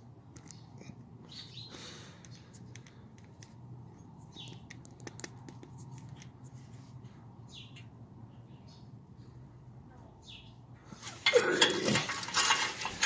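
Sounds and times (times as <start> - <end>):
light clicks and rustling of hands: 0.3 - 1.4, 2.2 - 8.0.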